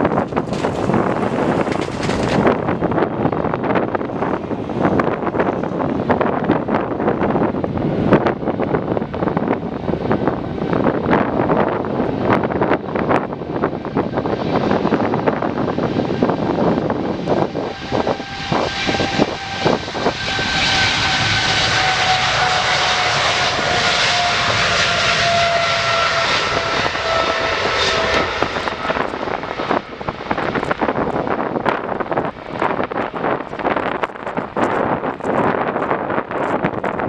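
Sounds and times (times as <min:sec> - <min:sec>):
airliner engines rushing: 0:00.0 - 0:37.0
jet engine whine: 0:00.0 - 0:37.0
wind buffeting microphone: 0:00.0 - 0:37.0.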